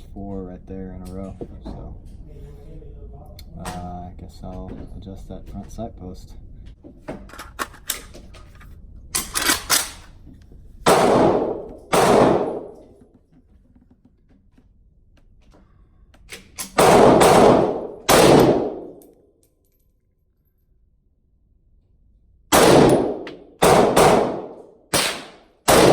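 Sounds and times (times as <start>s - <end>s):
gunshots: 10.9s - 12.9s, 16.7s - 19.0s, 22.5s - 25.9s.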